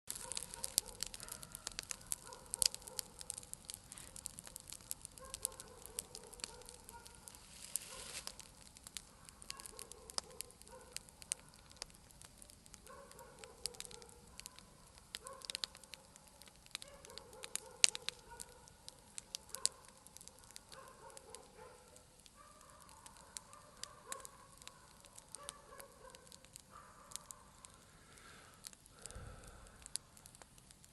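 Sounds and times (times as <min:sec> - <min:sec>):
bonfire crackling and popping: 0:00.0 - 0:30.9.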